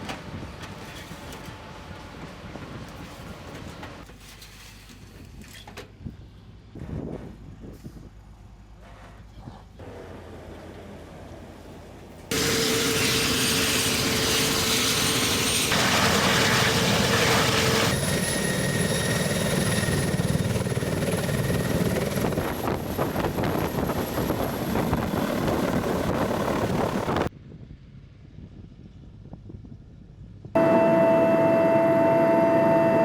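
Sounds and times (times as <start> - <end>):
helicopter rotor noise: 12.3 - 27.3
helicopter turbine whine: 12.3 - 27.3, 30.6 - 33.0.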